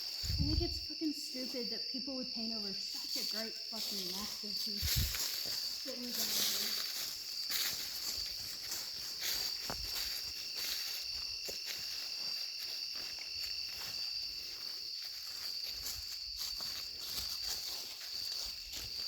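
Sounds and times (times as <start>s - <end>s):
insects droning: 0.0s - 19.0s
soft footsteps: 3.8s - 19.0s.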